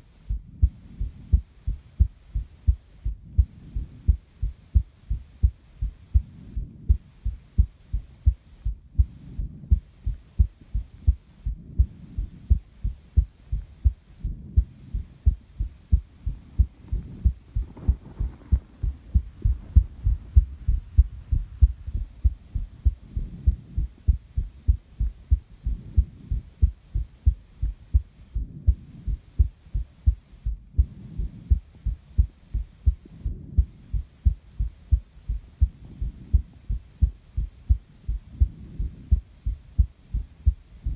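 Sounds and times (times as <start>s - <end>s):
heartbeat thumps: 0.0s - 40.9s
person breathing: 14.3s - 26.6s, 30.8s - 31.8s, 38.1s - 39.6s.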